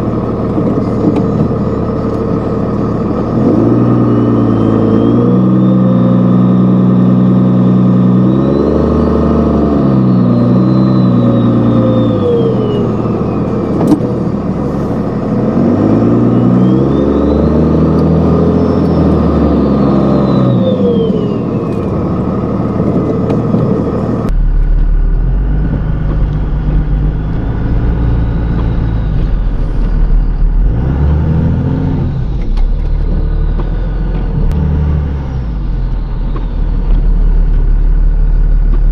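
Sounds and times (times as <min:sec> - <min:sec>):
diesel truck engine accelerating: 0:00.0 - 0:38.9
turbo whistle: 0:03.2 - 0:24.3.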